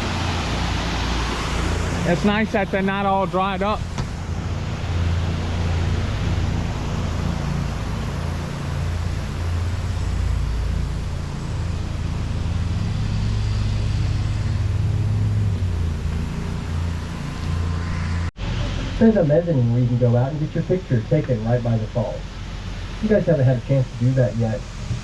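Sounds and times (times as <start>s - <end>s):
rushing noise: 0.0s - 25.0s
vehicle engine rumbling: 0.0s - 25.0s.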